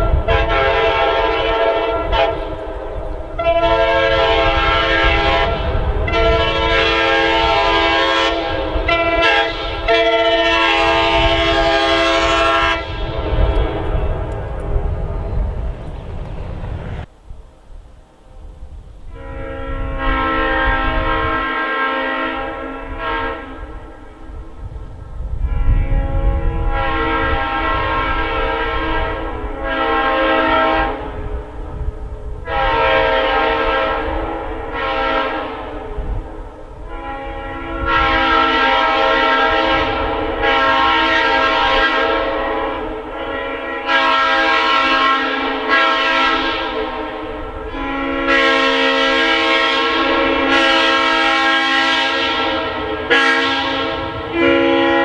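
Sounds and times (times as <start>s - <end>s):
locomotive air horn blasts: 0.0s - 14.4s, 19.0s - 55.0s
low held horn note: 25.4s - 55.0s.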